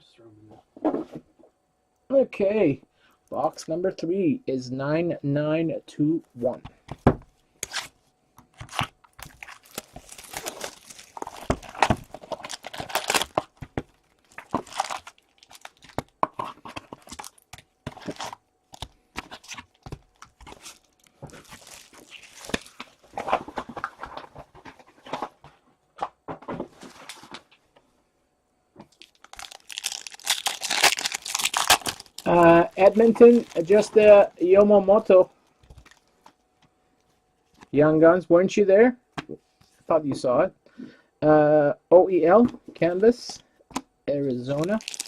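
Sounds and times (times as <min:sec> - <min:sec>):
plastic wrap and foil crinkling: 0:08.5 - 0:25.4, 0:28.9 - 0:36.4, 0:44.4 - 0:45.0.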